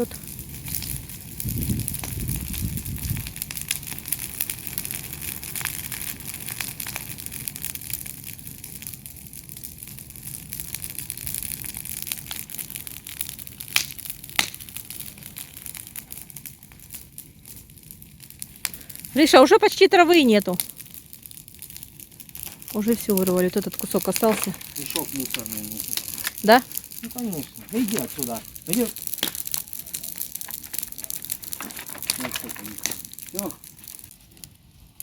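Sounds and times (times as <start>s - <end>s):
dry crackling and crunching: 0.0s - 35.0s
sharp snaps: 13.8s - 14.6s.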